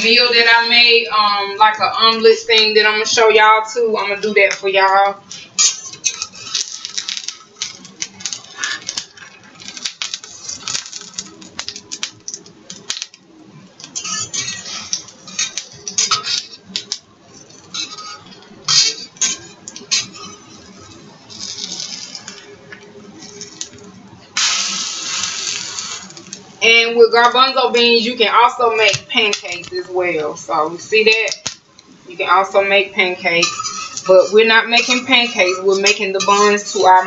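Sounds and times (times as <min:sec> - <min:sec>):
loud hiss: 0:24.4 - 0:26.2
utensils clinking and scraping: 0:33.3 - 0:37.0.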